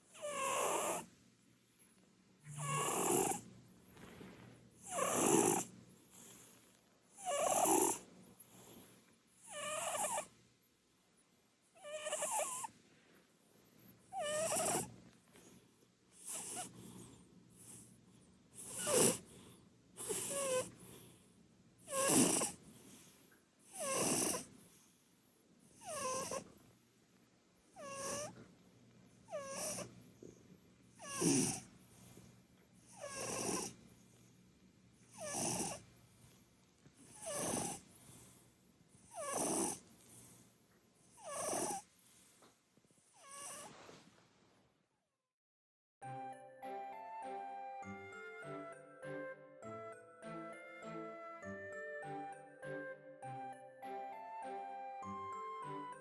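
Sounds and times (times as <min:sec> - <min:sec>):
cat snoring: 0:00.0 - 0:01.8, 0:02.4 - 0:15.6, 0:16.2 - 0:25.1, 0:25.7 - 0:28.6, 0:29.3 - 0:34.3, 0:35.1 - 0:36.4, 0:37.0 - 0:38.4, 0:39.0 - 0:44.0.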